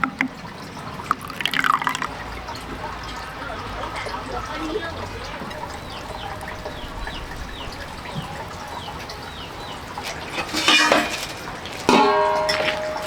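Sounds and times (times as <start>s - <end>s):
chicks peeping: 4.0s - 10.7s.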